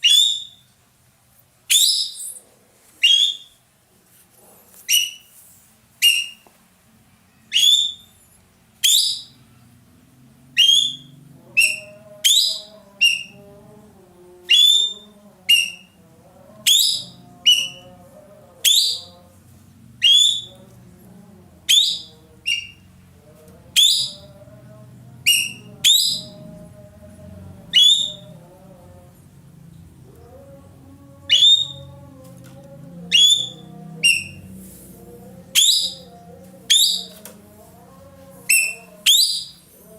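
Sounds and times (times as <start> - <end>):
bird calling with whistled notes: 0.0 - 0.6, 3.0 - 3.6, 6.0 - 6.4, 7.5 - 8.1.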